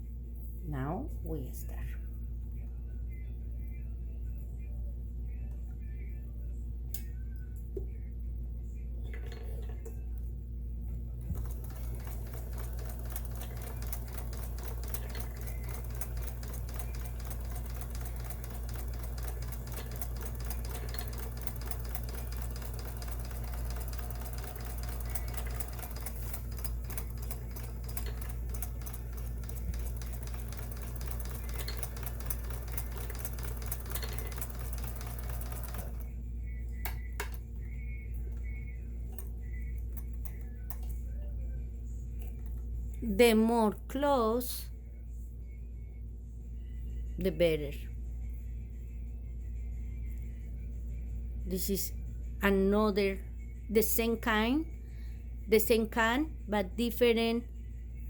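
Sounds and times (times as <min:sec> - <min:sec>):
sewing machine stitching: 0:11.3 - 0:36.0.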